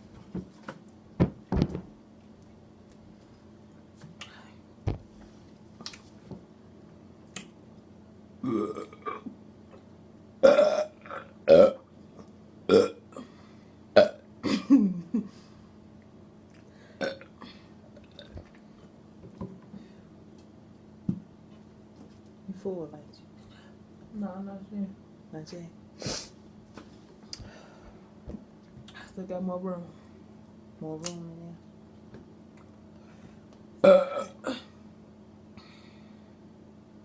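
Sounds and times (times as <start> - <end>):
person burping: 8.4 - 9.3, 10.4 - 11.9, 12.7 - 13.3, 14.0 - 14.9, 17.0 - 18.4, 33.8 - 34.7.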